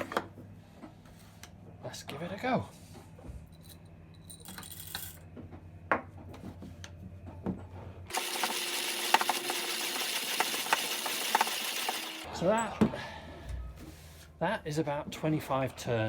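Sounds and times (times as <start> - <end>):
coffee grinder clicks and knocks: 8.1 - 12.1
coffee beans cracking: 8.1 - 12.3
coffee grinder crunching beans: 8.1 - 12.3.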